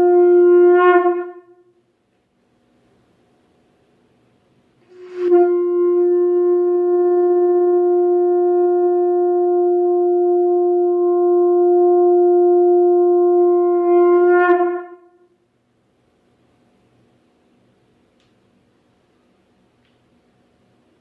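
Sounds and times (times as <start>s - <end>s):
conch shell blown: 0.0s - 1.8s, 4.8s - 15.4s.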